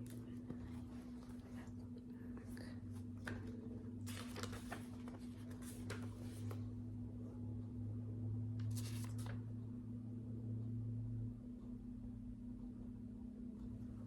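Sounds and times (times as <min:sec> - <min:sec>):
low electrical hum: 0:00.0 - 0:14.0
paper rustling: 0:03.0 - 0:06.7, 0:08.6 - 0:09.4.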